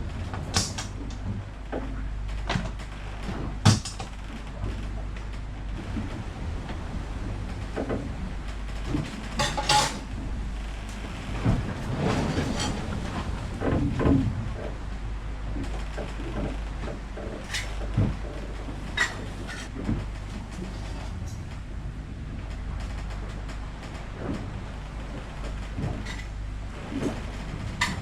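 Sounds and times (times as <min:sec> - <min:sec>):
steady low hum: 0:00.0 - 0:28.0
cookware clattering: 0:09.4 - 0:10.0.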